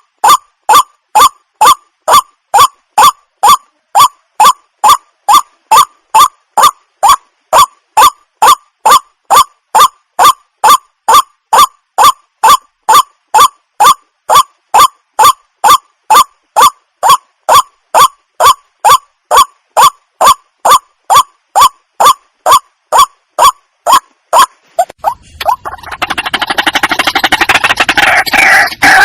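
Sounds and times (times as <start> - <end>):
bird honking calls: 22.5 - 29.0.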